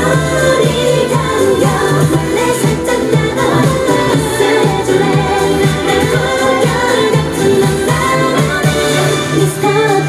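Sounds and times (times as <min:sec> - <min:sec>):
bass line: 0:00.0 - 0:10.0
person singing: 0:00.0 - 0:10.0
pop dance music: 0:00.0 - 0:10.0.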